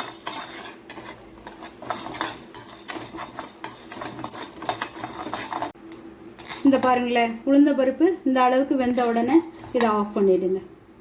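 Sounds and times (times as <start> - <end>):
metal spoon scraping a pan: 0.0 - 5.8, 8.8 - 10.1.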